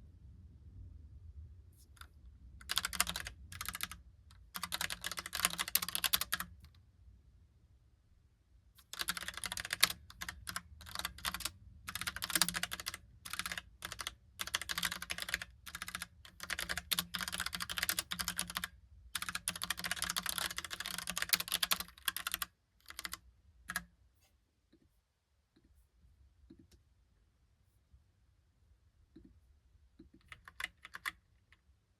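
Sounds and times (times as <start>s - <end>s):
mechanical keyboard typing: 2.0s - 6.8s, 8.8s - 23.9s, 30.0s - 31.6s.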